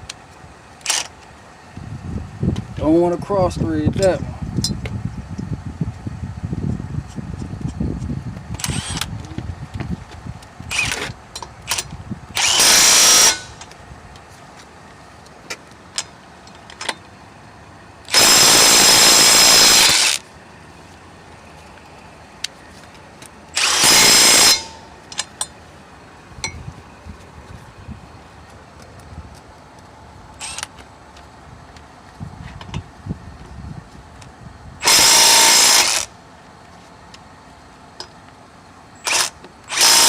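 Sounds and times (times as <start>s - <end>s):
impact wrench on lug nuts: 8.6s - 9.1s, 10.7s - 13.8s, 18.0s - 20.2s, 23.5s - 25.6s, 30.4s - 30.8s, 34.8s - 36.1s, 39.0s - 40.0s.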